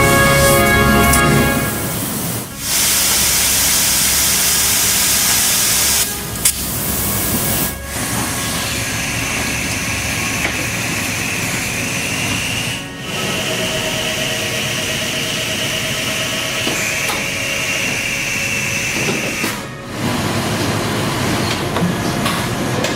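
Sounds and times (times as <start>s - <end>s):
steady hissing: 0.0s - 13.0s.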